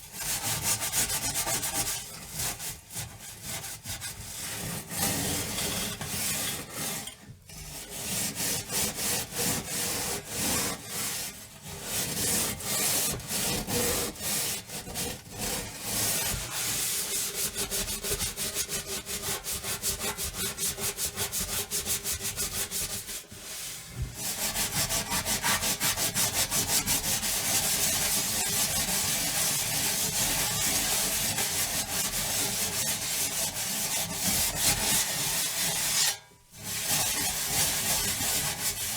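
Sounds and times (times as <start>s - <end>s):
scrubbing an oven: 12.1s - 38.9s.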